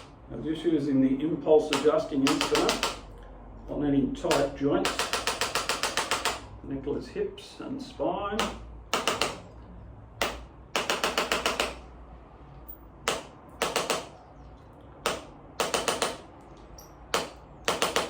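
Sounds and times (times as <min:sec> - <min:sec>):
sharp mechanical clicks: 0:01.6 - 0:03.1, 0:04.3 - 0:06.5, 0:08.4 - 0:09.6, 0:10.2 - 0:11.9, 0:12.7 - 0:14.2, 0:15.0 - 0:18.0.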